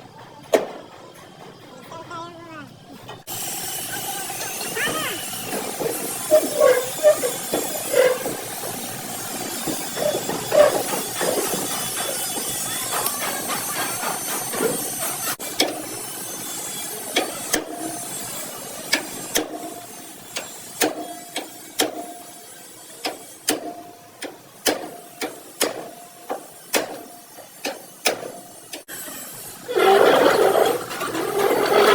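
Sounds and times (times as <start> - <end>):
hammer on sheet metal: 23.0 - 28.8.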